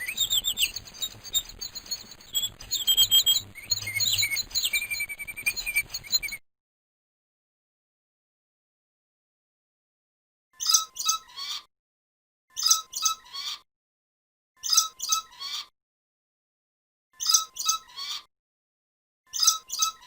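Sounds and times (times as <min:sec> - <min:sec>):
bird call: 0:00.0 - 0:06.4.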